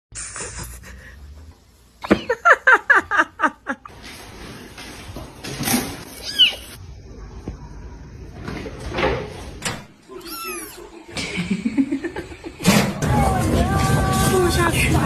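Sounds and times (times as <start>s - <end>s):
person laughing: 10.8s - 12.6s.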